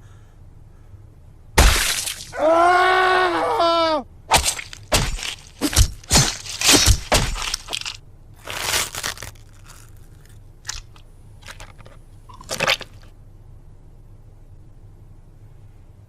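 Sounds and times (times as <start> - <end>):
harsh crunching and crackling: 4.3 - 13.1.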